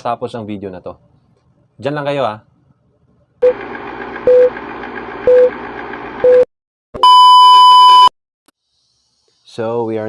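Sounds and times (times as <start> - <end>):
long higher beep: 7.0 - 8.1
short electronic beeps: 7.0 - 8.1
hiss: 8.6 - 9.7.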